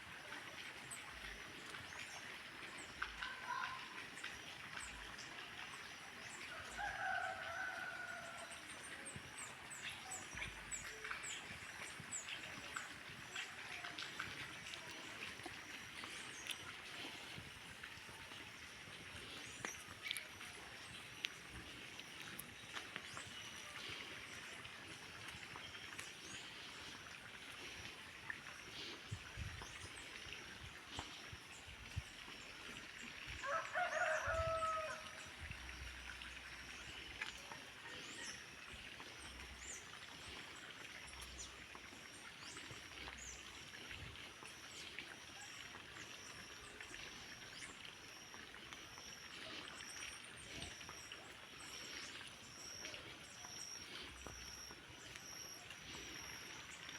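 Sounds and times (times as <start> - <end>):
rooster crowing: 6.8 - 8.5, 33.4 - 35.0.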